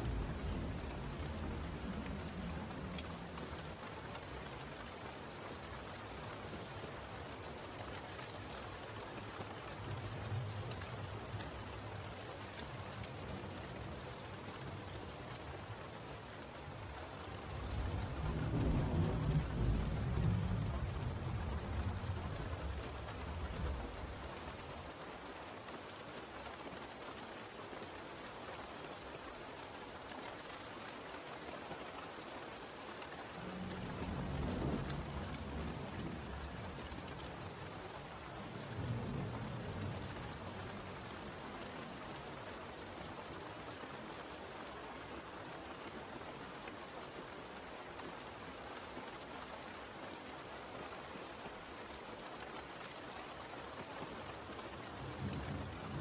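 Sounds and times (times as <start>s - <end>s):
low rumbles of thunder: 0.0s - 4.8s, 16.8s - 24.8s, 33.3s - 42.4s, 54.5s - 56.0s
steady rain falling: 0.0s - 56.0s.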